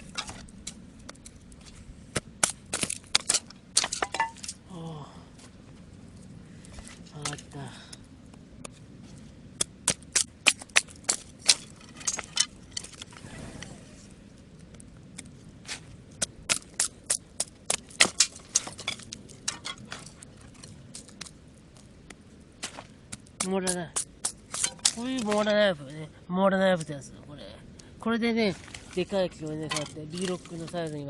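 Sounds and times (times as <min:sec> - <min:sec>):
dry wood cracking and snapping: 0:00.0 - 0:04.8, 0:06.2 - 0:08.8, 0:09.5 - 0:13.7, 0:14.3 - 0:25.7.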